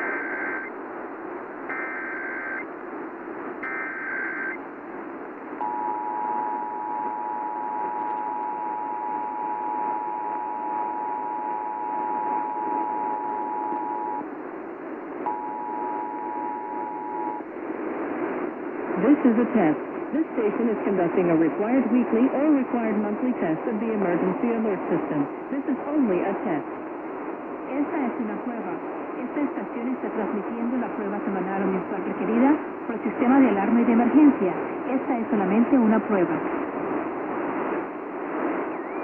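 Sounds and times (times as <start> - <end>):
radio hiss: 0.0 - 39.0
two-tone attention signal: 15.3 - 17.4.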